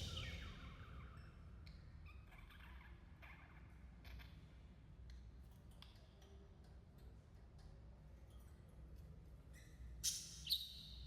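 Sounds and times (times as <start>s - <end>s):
low rumble: 0.0s - 0.9s.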